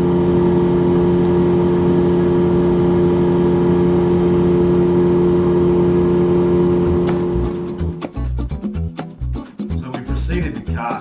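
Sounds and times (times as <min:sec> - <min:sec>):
outboard motor running: 0:00.0 - 0:08.0.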